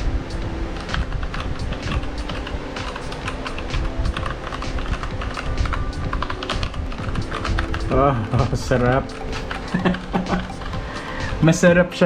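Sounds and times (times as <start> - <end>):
mechanical keyboard typing: 0.3 - 10.8.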